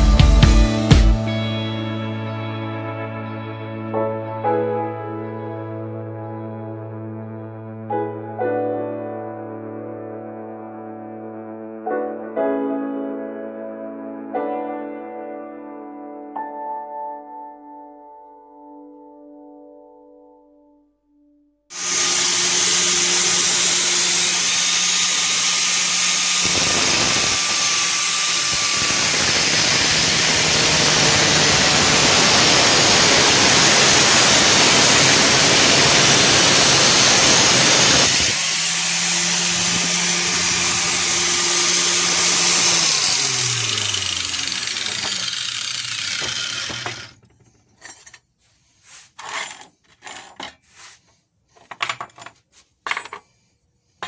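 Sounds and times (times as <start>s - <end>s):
angle grinder winding down: 21.7s - 47.2s
angle grinder cutting: 21.7s - 48.0s.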